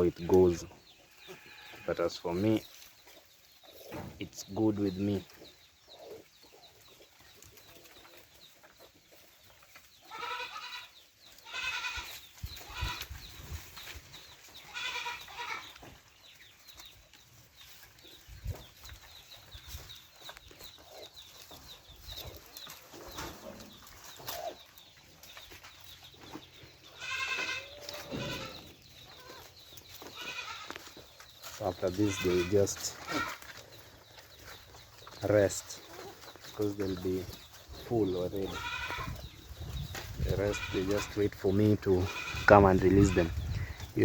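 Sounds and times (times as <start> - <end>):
goats bleating: 1.1 - 2.3, 10.0 - 13.1, 14.6 - 15.9, 26.9 - 31.0, 31.8 - 33.6, 38.0 - 39.3, 40.2 - 43.8.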